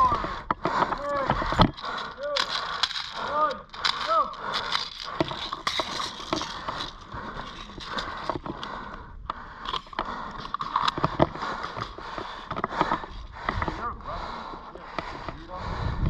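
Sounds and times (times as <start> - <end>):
sharp clicks and cracks: 0.0 - 15.4.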